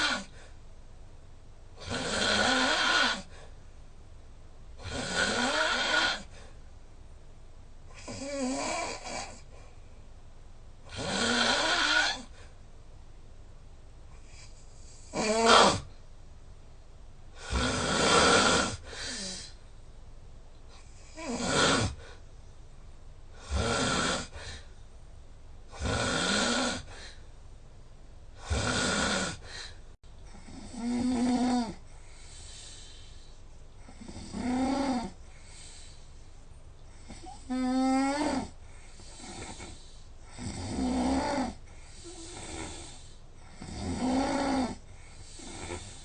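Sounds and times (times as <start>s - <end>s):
person snoring loudly: 0.0s - 0.4s, 1.8s - 3.3s, 4.8s - 6.3s, 7.9s - 9.4s, 10.9s - 12.4s, 15.0s - 15.9s, 17.4s - 19.5s, 21.1s - 22.1s, 23.4s - 24.6s, 25.7s - 27.2s, 28.4s - 29.7s, 30.3s - 31.8s, 33.8s - 35.8s, 37.0s - 46.0s.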